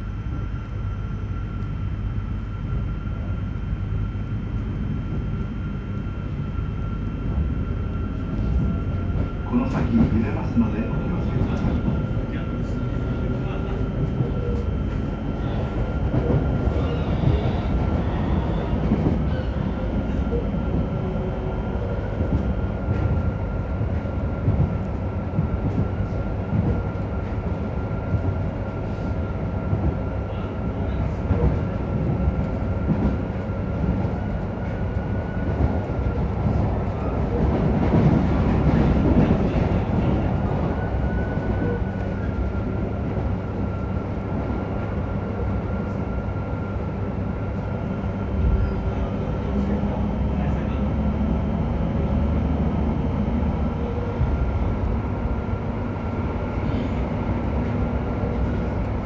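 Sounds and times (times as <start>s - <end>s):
rail clicks: 8.2s - 28.5s.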